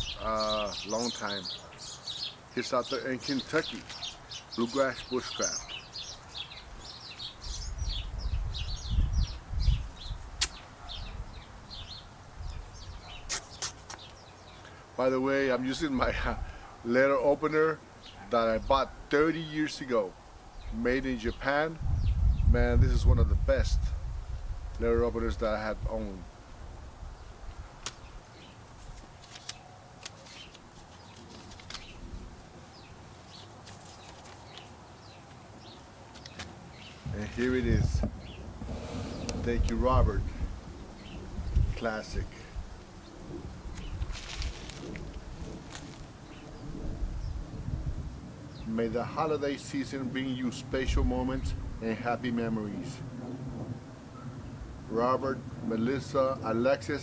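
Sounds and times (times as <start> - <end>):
small birds chirping: 0.0 - 22.8, 27.0 - 48.9
sharp click: 10.4 - 10.6
paper rustling: 28.7 - 32.0, 33.1 - 35.4, 44.0 - 46.1
paper envelope crackling: 28.8 - 32.0, 33.6 - 35.4, 44.0 - 46.1.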